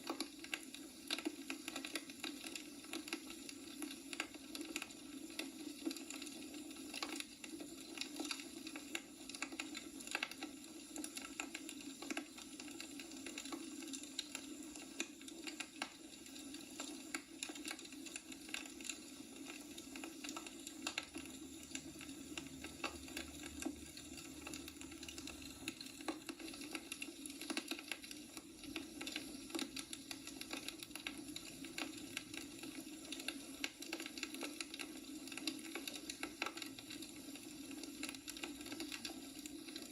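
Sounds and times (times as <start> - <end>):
logs crackling in fire: 0.0 - 39.9.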